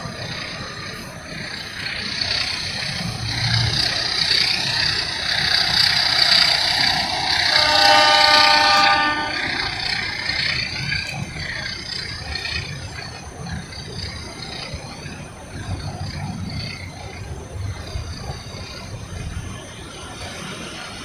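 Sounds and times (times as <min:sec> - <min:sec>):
train running on railway: 0:00.0 - 0:21.0
train horn blast: 0:07.4 - 0:11.2.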